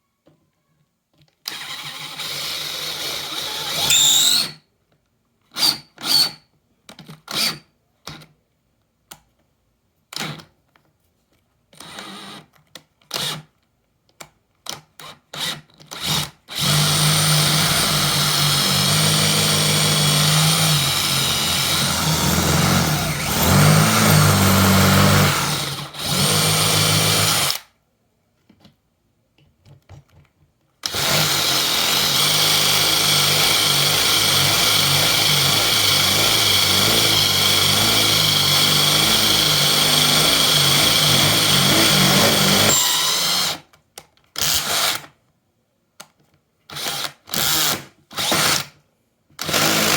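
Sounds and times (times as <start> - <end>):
cordless drill running: 1.5 - 4.5, 15.4 - 27.7, 30.9 - 43.6, 46.8 - 48.7, 49.4 - 49.9.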